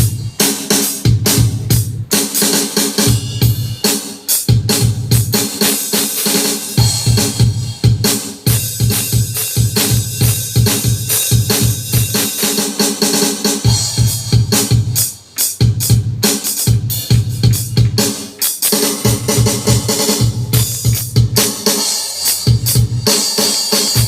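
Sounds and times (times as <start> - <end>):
drum machine beat: 0.0 - 24.0
low pitched bass part: 19.1 - 23.1.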